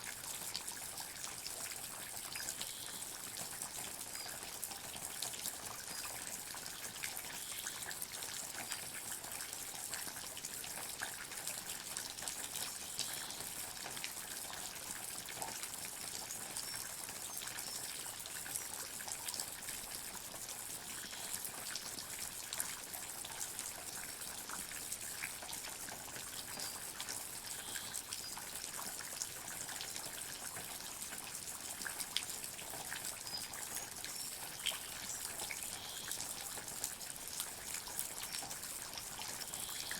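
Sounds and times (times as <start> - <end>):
running water hiss: 32.4 - 37.3, 38.1 - 39.9.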